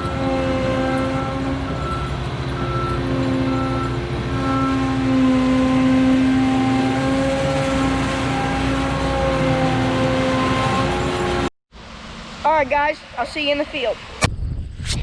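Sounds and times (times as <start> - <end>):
farm machinery humming: 0.0 - 14.2.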